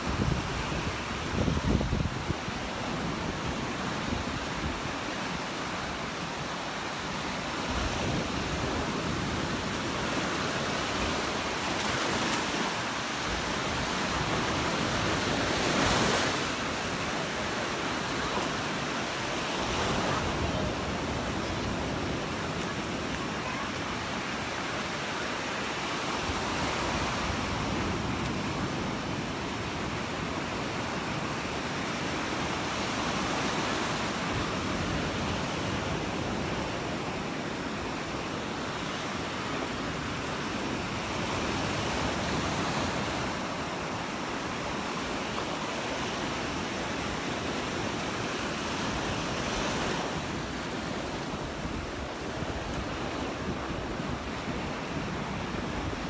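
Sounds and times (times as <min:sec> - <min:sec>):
wind on microphone: 0:00.0 - 0:25.0
surf washing onto beach: 0:00.0 - 0:56.0.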